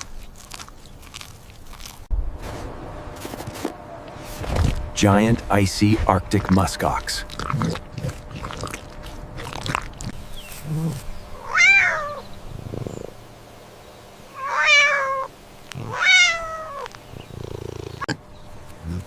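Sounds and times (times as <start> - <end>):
animal meow-like cries: 10.7 - 12.3, 14.3 - 17.0.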